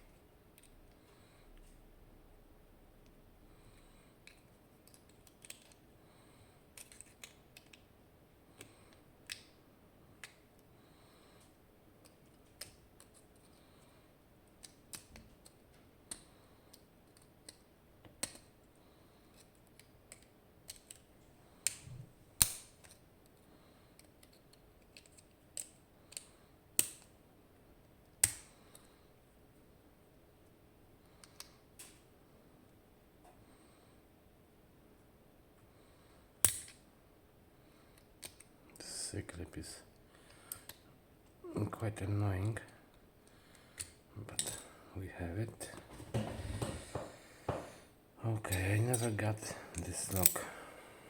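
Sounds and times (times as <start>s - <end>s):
hand tools being handled: 45.7s - 47.8s.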